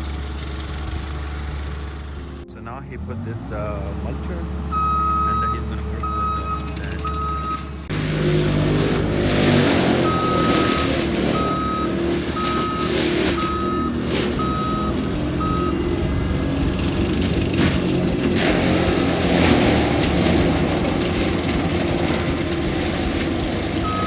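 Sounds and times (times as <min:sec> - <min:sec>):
diesel engine running: 0:00.0 - 0:24.0
reversing alarm beeping: 0:04.7 - 0:07.9, 0:09.5 - 0:17.1, 0:23.7 - 0:24.0.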